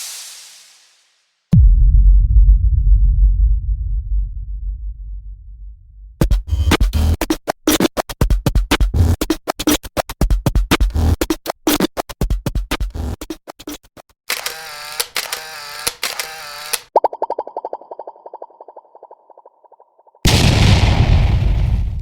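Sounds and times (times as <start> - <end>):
low rumble: 1.6 - 6.2
heavy bass hits: 1.6 - 7.0
turntable scratching: 6.2 - 14.0.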